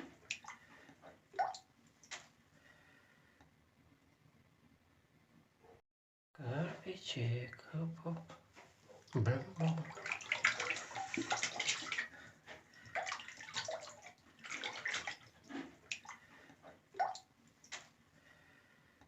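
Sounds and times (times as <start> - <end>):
water splashing in bathtub: 0.0 - 2.3, 8.9 - 18.0.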